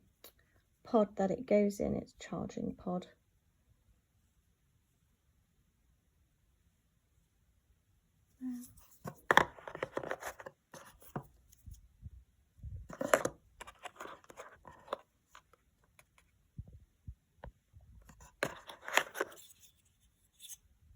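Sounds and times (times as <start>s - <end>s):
packaging rustling and scraping: 8.5s - 11.8s, 12.9s - 16.2s, 18.1s - 20.6s.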